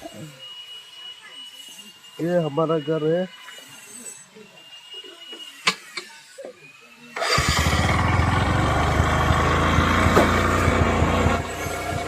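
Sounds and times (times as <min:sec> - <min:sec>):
vehicle engine starting and running: 0:07.2 - 0:12.0.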